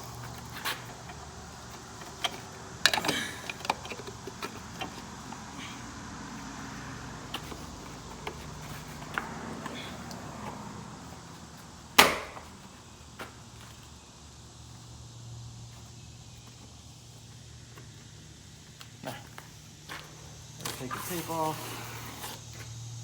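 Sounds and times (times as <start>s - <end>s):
clicks and knocks of grille: 0.3s - 5.4s, 12.0s - 13.3s.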